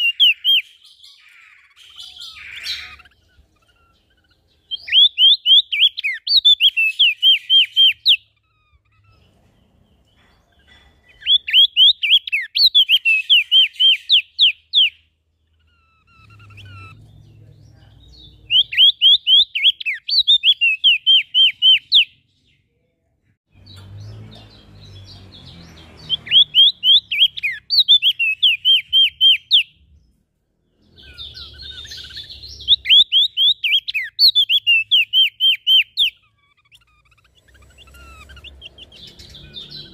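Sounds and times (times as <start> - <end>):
songbird chirping: 0.0 - 39.9.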